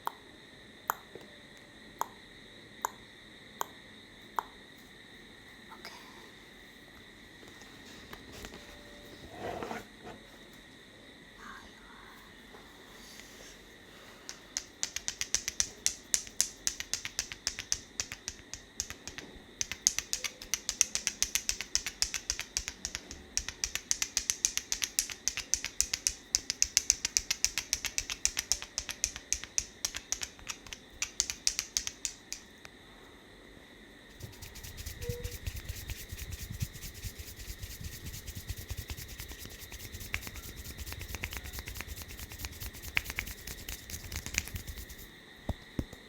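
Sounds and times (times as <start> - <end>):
rapid hand taps on head: 14.6 - 32.4, 34.2 - 45.1.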